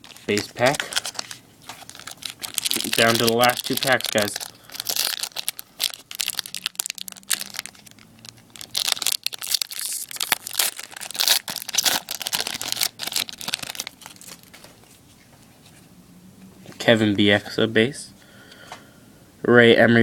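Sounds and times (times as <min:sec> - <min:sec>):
wrapper tearing and crinkling: 0:00.0 - 0:14.7.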